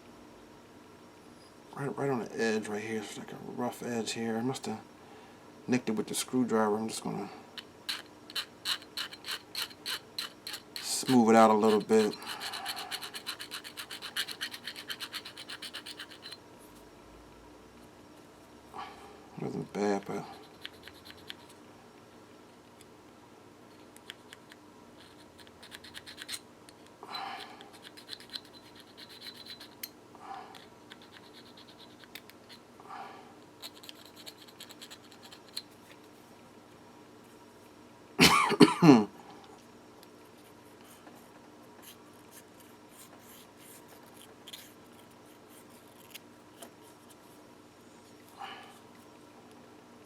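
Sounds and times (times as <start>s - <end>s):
small metal parts scraping: 7.6s - 16.4s, 27.7s - 29.9s, 33.6s - 36.0s
person coughing: 38.2s - 39.1s.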